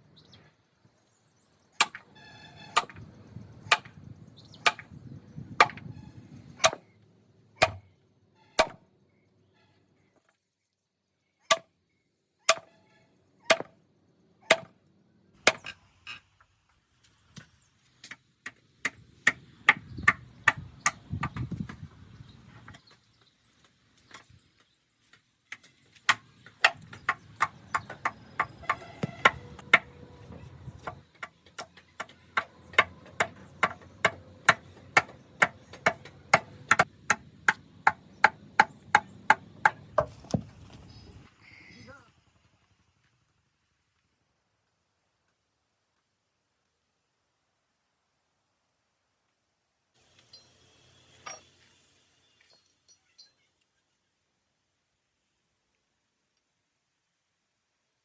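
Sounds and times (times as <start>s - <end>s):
hand tool striking wood: 1.8s - 3.1s, 3.7s - 4.0s, 4.6s - 5.0s, 5.6s - 5.9s, 6.5s - 6.8s, 7.6s - 7.9s, 8.6s - 8.8s, 11.5s - 11.7s, 12.5s - 12.8s, 13.4s - 13.7s, 14.4s - 14.7s, 15.5s - 15.8s, 18.0s - 21.8s, 25.5s - 40.4s.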